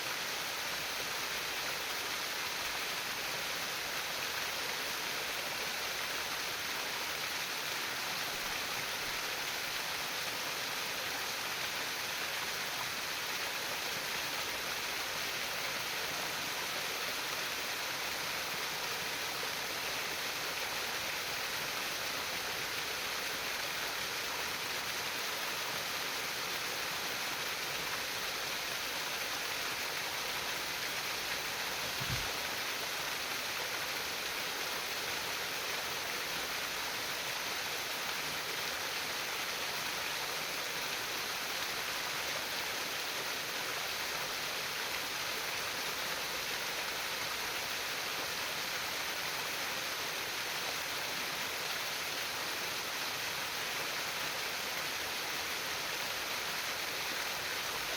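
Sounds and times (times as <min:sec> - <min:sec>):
stream babbling: 0:00.0 - 0:57.9
soft low bump: 0:31.9 - 0:32.3.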